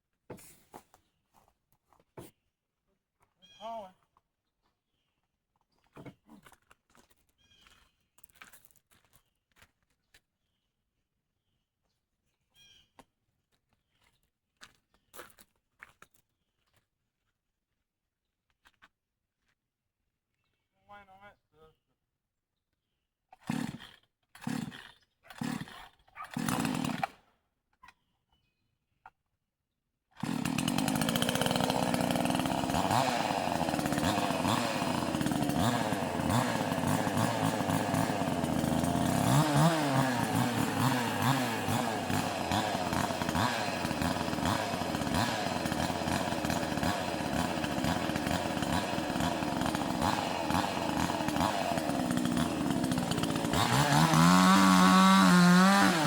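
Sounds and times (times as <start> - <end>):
chainsaw cutting wood: 23.3 - 27.3, 30.2 - 56.0.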